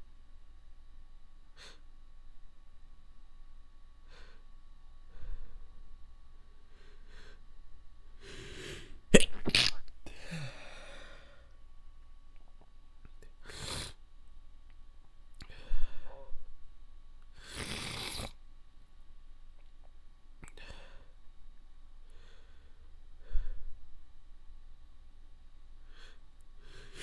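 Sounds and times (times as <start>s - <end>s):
person sneezing stifled: 9.1s - 9.8s.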